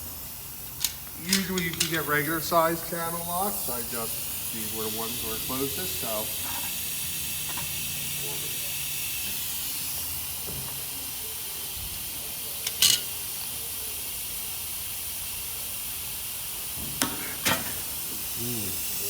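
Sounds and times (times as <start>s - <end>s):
steady hiss: 0.0s - 19.0s.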